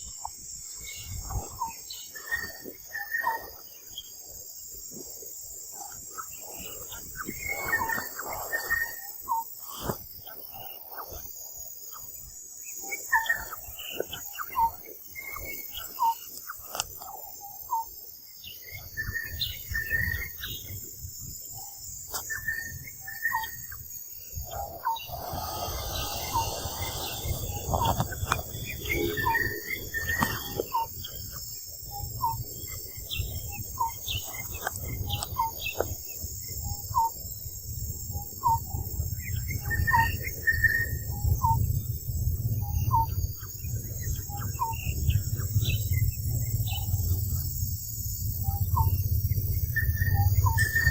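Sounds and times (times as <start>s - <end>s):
insects droning: 0.0s - 50.9s
short chirping calls: 24.4s - 31.2s
low rumble: 24.5s - 30.2s.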